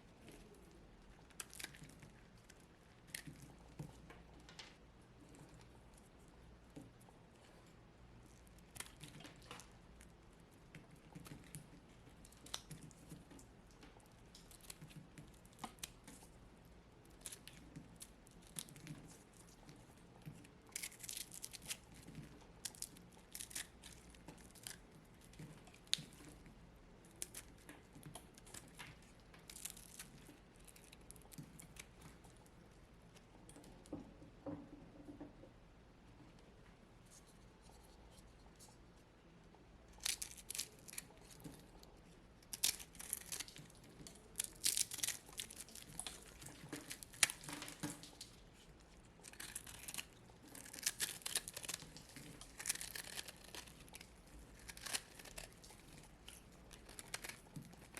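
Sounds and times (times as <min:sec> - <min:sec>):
brittle block crumbling and crackling: 0:42.4 - 0:48.4, 0:49.2 - 0:57.9.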